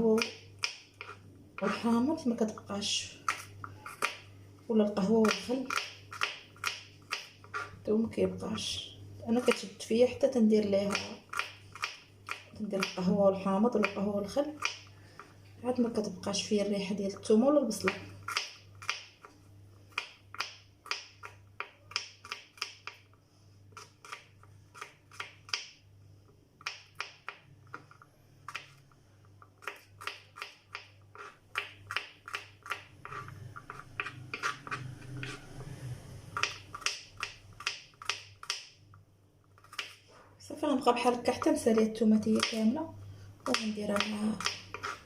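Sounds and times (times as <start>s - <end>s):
knife cutting garlic: 0.0s - 2.0s, 3.2s - 4.2s, 4.8s - 7.8s, 10.6s - 15.3s, 17.7s - 19.3s, 19.9s - 23.1s, 23.7s - 25.8s, 26.6s - 28.8s, 29.6s - 35.7s, 36.3s - 38.8s, 39.5s - 40.0s, 41.4s - 42.7s, 43.4s - 45.0s.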